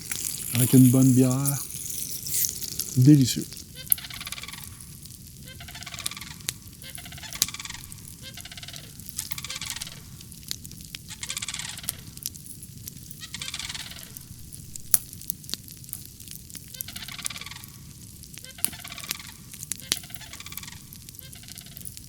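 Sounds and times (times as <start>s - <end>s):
wood fire crackling: 0.0s - 22.0s
large bird calling harshly: 0.2s - 4.8s, 5.5s - 10.1s, 11.1s - 12.2s, 13.2s - 14.3s, 16.7s - 17.8s, 18.5s - 21.9s.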